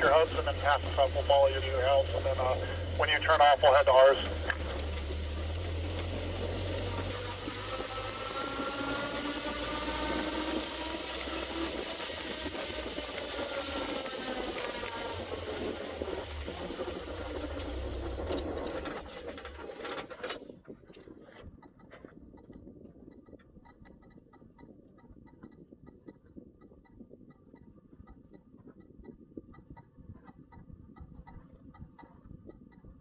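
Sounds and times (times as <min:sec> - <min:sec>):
vehicle rumbling over dirt: 0:00.0 - 0:07.8
engine running quietly with ticking: 0:00.0 - 0:26.9
click: 0:18.2 - 0:32.9.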